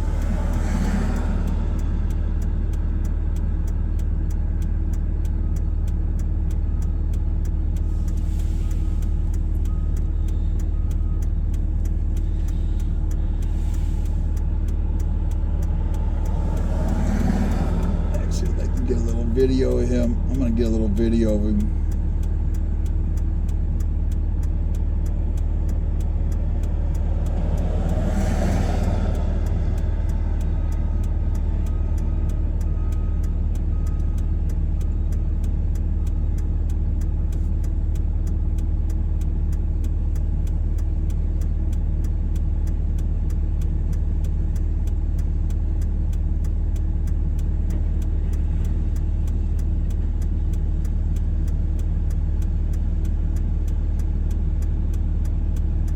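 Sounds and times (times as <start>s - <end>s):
truck engine rumble: 0.0s - 55.9s
hazard flashers ticking: 9.3s - 33.7s.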